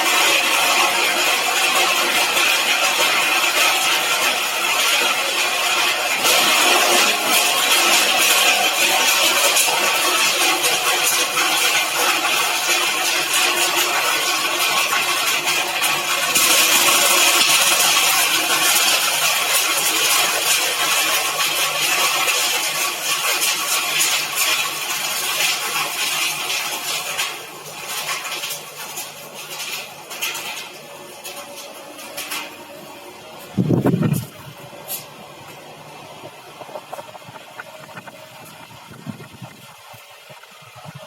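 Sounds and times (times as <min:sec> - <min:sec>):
shredder motor hum: 0:00.0 - 0:28.0
crackling and rattling material: 0:33.4 - 0:41.0.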